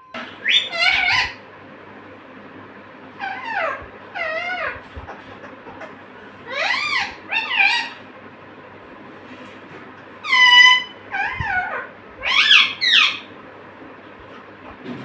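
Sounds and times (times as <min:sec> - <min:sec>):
parrot squeaky calls: 0:00.2 - 0:01.4, 0:03.2 - 0:04.8, 0:06.5 - 0:08.0, 0:10.2 - 0:13.3.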